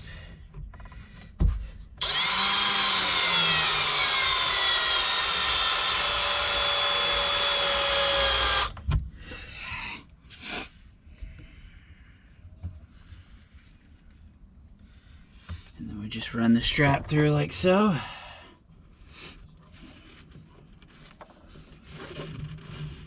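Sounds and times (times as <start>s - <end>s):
power drill running: 2.0s - 8.8s.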